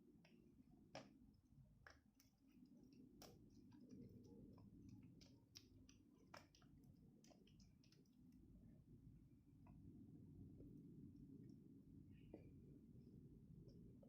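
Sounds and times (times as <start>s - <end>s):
slime squelching and clicking: 0.2s - 8.2s.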